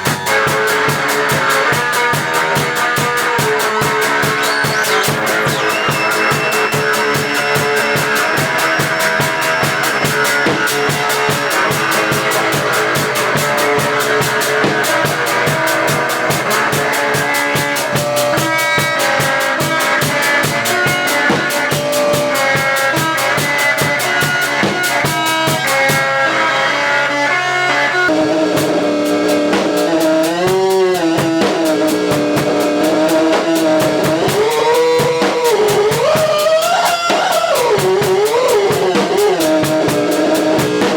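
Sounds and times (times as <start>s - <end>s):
fast drum hits: 0.0s - 26.1s
guitar: 0.0s - 40.9s
pitch-bending sustained tones: 3.6s - 19.2s.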